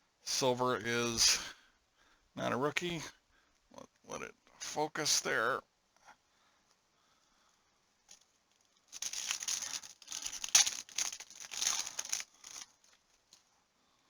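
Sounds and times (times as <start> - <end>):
plastic wrapper crinkling and tearing: 8.1 - 13.4.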